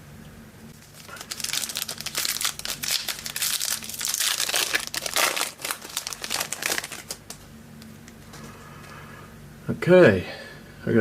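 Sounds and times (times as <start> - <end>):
foil wrapper crinkling: 0.8 - 8.5.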